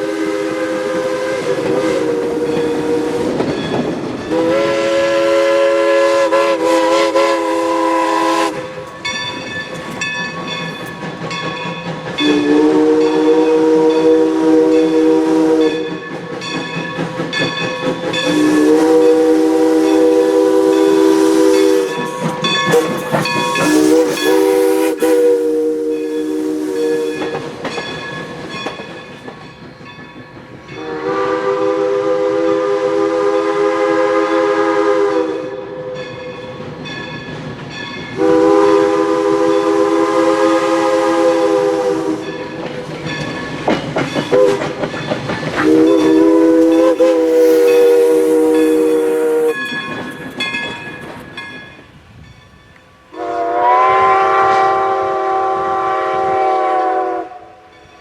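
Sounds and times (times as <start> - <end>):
steam whistle blasts: 0.0 - 3.5, 4.3 - 8.9, 12.2 - 16.0, 18.2 - 27.4, 30.8 - 36.2, 38.2 - 42.5, 45.6 - 49.8, 53.1 - 57.8
locomotive running: 0.0 - 53.2
rail clatter: 1.0 - 5.0, 8.4 - 25.4, 26.0 - 31.2, 41.1 - 52.9.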